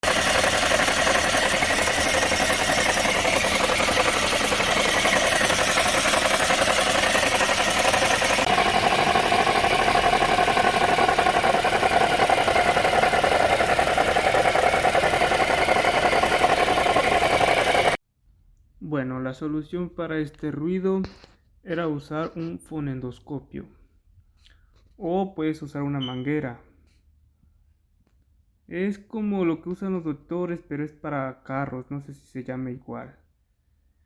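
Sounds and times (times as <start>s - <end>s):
alternator whirring: 0.0s - 18.0s
car engine running: 0.0s - 18.0s.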